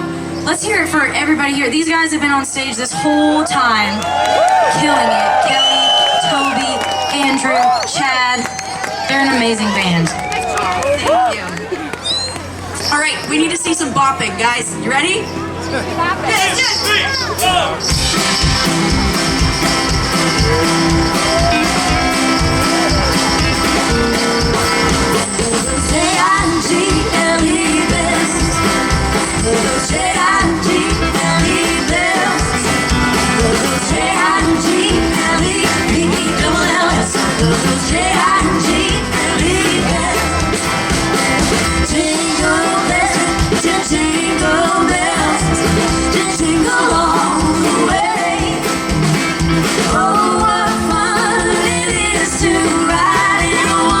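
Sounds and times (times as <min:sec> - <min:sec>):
country-rock band playing: 0:00.0 - 0:54.0
woman singing: 0:25.2 - 0:40.6, 0:41.8 - 0:48.8, 0:49.8 - 0:54.0.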